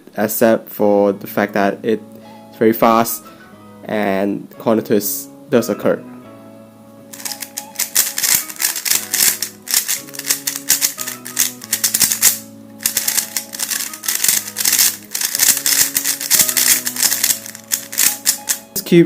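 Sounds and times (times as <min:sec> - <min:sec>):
background music: 0:00.0 - 0:19.0
speedcube clacking: 0:07.2 - 0:18.6.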